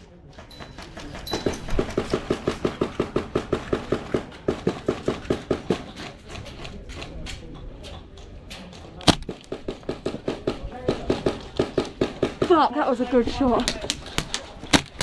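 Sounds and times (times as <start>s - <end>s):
airsoft gun rapid shots: 9.0s - 12.6s, 13.8s - 15.0s.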